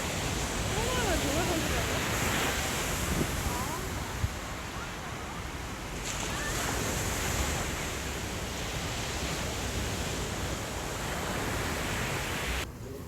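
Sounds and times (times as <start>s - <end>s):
wind buffeting microphone: 0.0s - 4.7s
sea waves washing onto beach: 0.0s - 12.7s.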